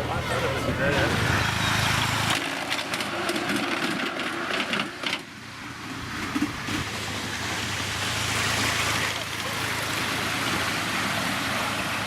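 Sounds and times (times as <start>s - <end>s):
steam locomotive clattering: 0.0s - 5.3s.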